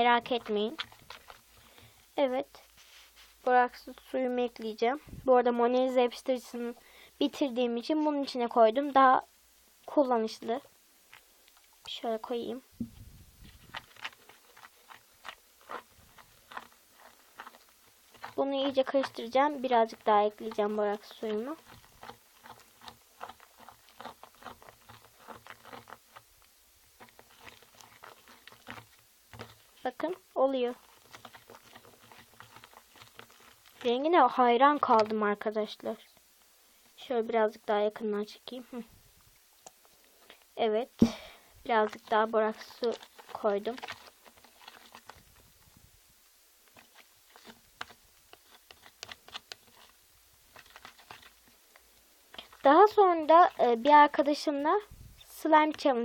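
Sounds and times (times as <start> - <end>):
spoon stirring wet slime: 0.0 - 4.8, 11.1 - 35.8, 41.0 - 45.4, 46.6 - 54.5.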